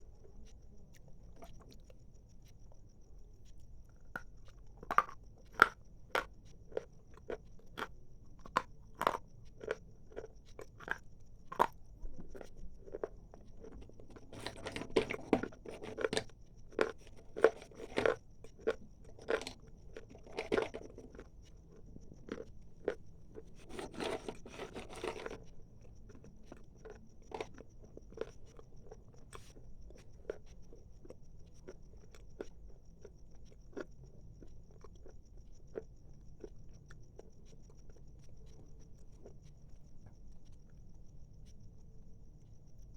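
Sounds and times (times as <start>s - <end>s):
chalk being crunched and chewed: 8.5s - 21.6s, 22.2s - 25.5s.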